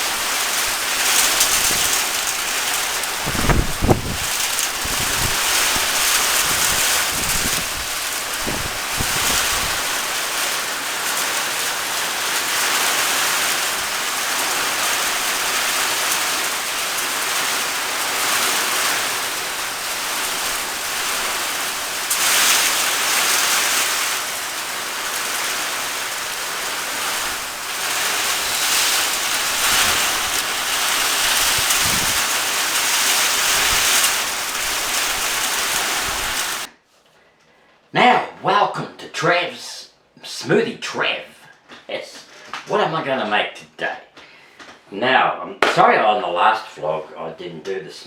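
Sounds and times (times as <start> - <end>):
rain falling steadily: 0.0 - 36.7.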